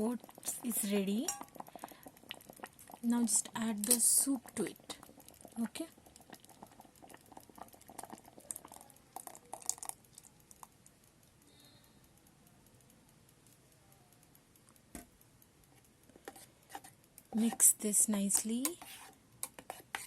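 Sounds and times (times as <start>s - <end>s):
bowl and utensil clicks and scrapes: 0.2s - 10.7s, 15.7s - 20.0s.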